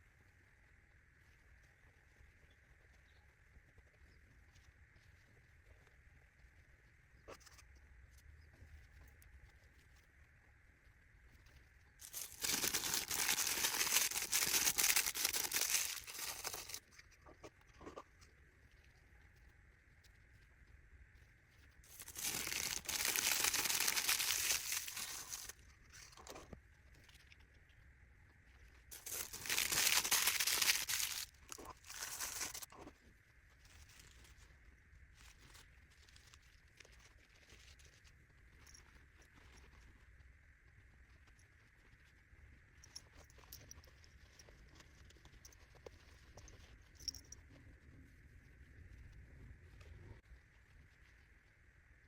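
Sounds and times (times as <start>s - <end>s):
wrapping material crinkling: 12.0s - 16.9s, 21.9s - 25.6s, 28.9s - 32.7s.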